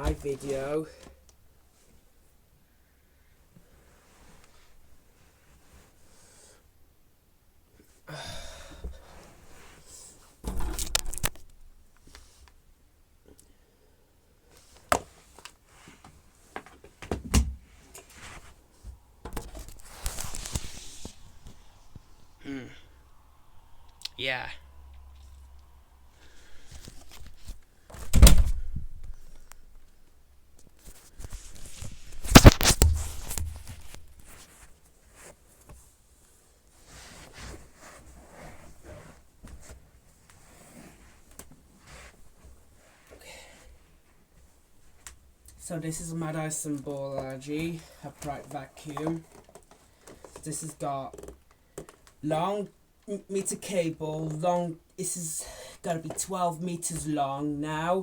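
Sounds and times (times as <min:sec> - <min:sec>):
rustling and scraping: 0:09.1 - 0:12.5, 0:17.6 - 0:23.9, 0:24.9 - 0:43.2
heavy thump: 0:10.4 - 0:11.2
plastic parts clicking and knocking: 0:51.1 - 0:52.2.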